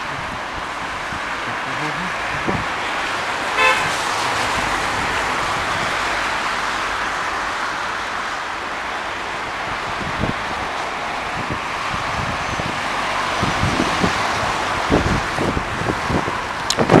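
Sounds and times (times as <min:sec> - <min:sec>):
street traffic noise: 0:00.0 - 0:17.0
vehicle horn toot: 0:03.6 - 0:04.1.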